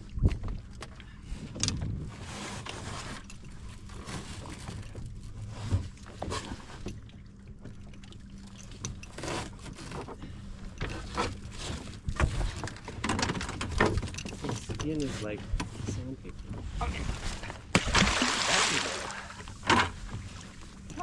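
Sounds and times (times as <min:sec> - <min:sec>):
knocks and clatter aboard: 0:00.0 - 0:17.8, 0:19.3 - 0:21.0
water splashing around boat: 0:00.0 - 0:21.0
steady low hum: 0:14.0 - 0:21.0.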